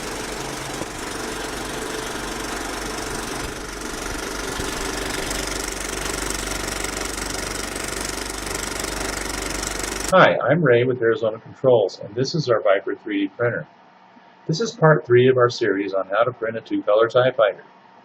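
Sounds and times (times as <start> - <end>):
three d printer motors and fans: 0.0 - 10.2.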